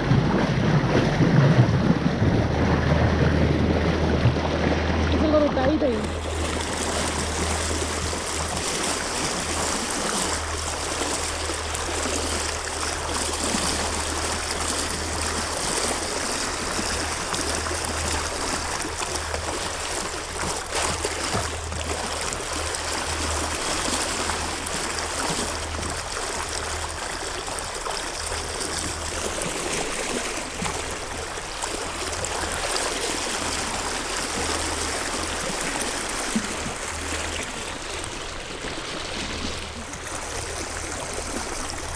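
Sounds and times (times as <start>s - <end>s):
low rumble: 0.0s - 10.6s
rushing water: 0.0s - 41.9s.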